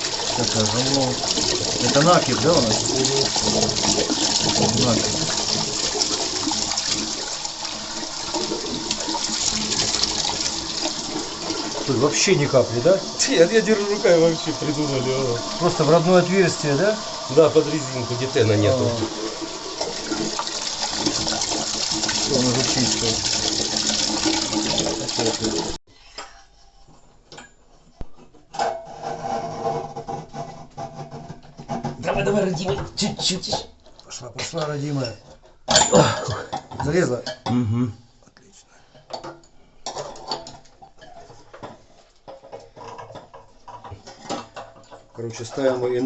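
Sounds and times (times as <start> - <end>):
water rushing through tank: 0.0 - 25.8.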